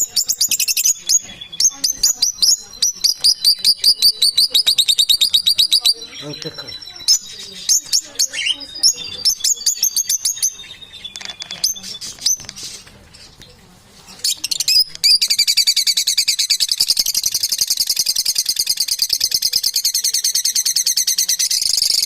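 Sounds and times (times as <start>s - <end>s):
parrot chirping and whistling: 14.2s - 19.1s.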